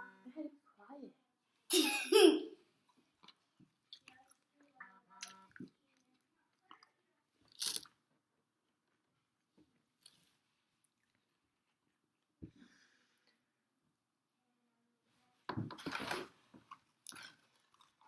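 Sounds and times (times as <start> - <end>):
person chewing food: 2.9 - 4.5, 5.2 - 8.0, 16.7 - 18.0
wet mouth clicks and smacks: 7.5 - 7.9.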